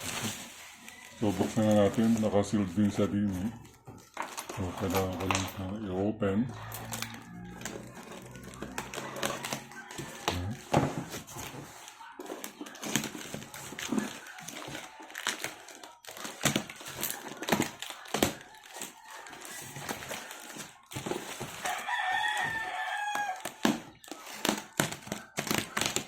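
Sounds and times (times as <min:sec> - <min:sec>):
cardboard package being opened: 0:00.0 - 0:02.4, 0:07.0 - 0:26.0
rooster crowing: 0:06.5 - 0:11.0, 0:18.7 - 0:23.6.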